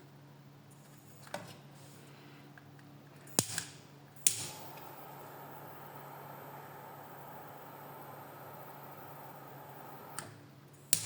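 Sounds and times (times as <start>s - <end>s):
torch igniter clicks: 3.3s - 4.9s, 10.1s - 11.0s.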